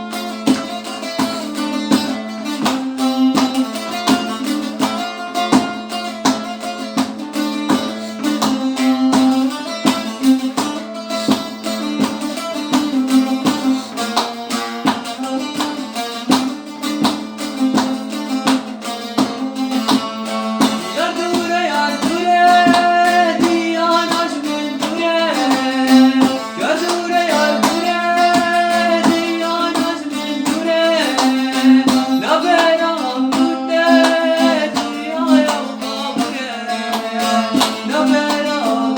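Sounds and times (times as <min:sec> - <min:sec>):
plucked string instrument: 0:00.0 - 0:38.9
person singing: 0:20.8 - 0:38.9.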